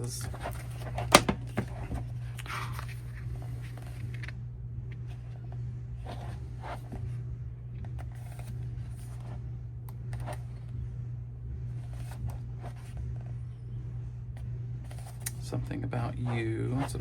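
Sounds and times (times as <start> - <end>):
steady low hum: 0.0 - 17.0
photobook pages turning: 0.3 - 1.7.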